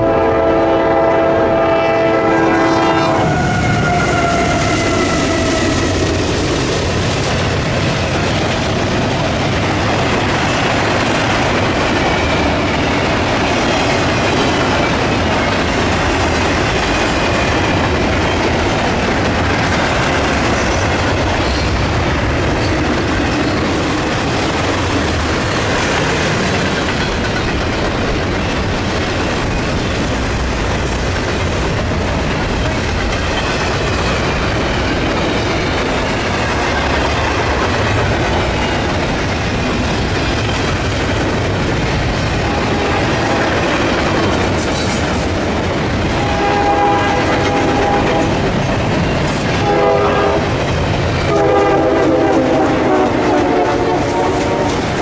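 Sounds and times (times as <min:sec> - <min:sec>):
train wheels clattering on rails: 0:03.1 - 0:55.0.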